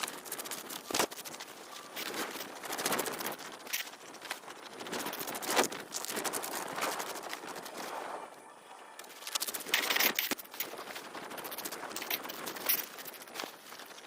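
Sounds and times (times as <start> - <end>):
gear rustling: 0.0 - 8.2, 9.0 - 14.0
crunching on snow and ice: 0.0 - 8.3, 9.0 - 14.0.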